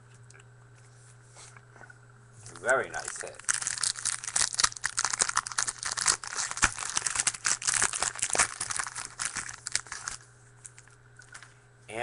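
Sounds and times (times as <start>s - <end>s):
wrapper crinkling and tearing: 2.5s - 11.5s.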